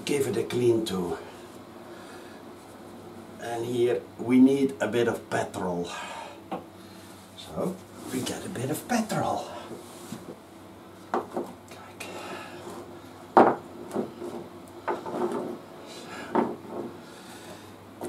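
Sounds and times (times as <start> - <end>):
tools knocking on workbench: 13.4 - 15.6, 16.3 - 16.9.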